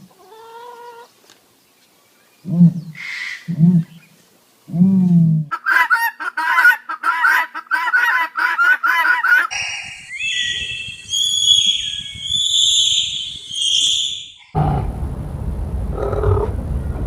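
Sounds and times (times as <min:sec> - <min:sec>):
fowl honking calls: 0:05.5 - 0:09.6
rapid high-pitched fowl calls: 0:05.5 - 0:14.5.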